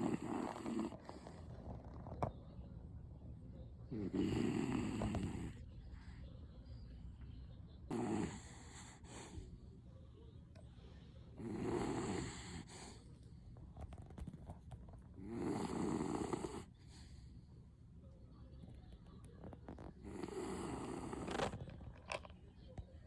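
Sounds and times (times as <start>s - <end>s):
dog snoring: 0.0s - 2.3s, 3.9s - 5.7s, 7.9s - 9.4s, 11.3s - 13.0s, 13.7s - 17.2s, 19.4s - 22.2s.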